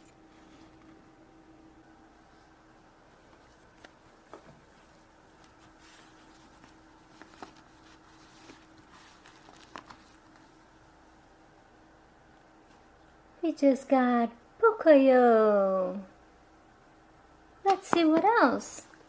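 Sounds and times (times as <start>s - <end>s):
packaging rustling: 3.4s - 10.5s.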